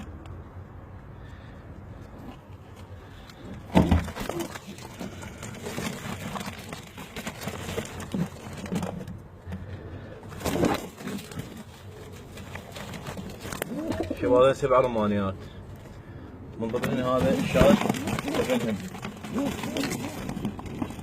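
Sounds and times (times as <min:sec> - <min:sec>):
doves cooing: 0:09.6 - 0:14.7, 0:16.1 - 0:21.0.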